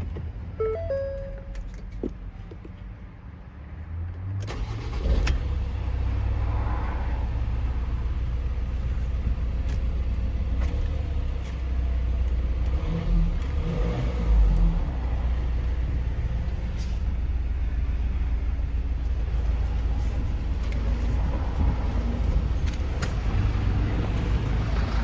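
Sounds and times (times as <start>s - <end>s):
engine starting clicks: 4.4s - 5.6s
van engine running: 7.2s - 25.0s.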